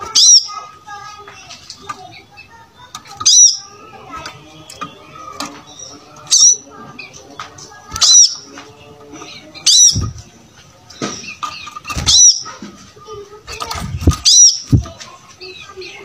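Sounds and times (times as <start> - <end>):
bird chirping loudly: 0.1 - 0.6, 3.2 - 6.7, 8.0 - 8.5, 9.5 - 10.2, 11.1 - 12.5, 14.1 - 14.8
bird twittering: 0.1 - 0.7, 2.1 - 8.5, 9.1 - 10.3, 10.9 - 12.6, 13.8 - 16.0.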